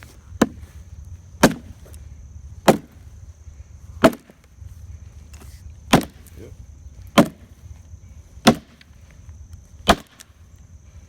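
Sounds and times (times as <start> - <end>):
sledgehammer striking post: 0.4 - 0.6, 1.4 - 1.8, 2.6 - 3.0, 4.0 - 4.4, 5.9 - 6.3, 7.1 - 7.5, 8.4 - 8.8, 9.8 - 10.2.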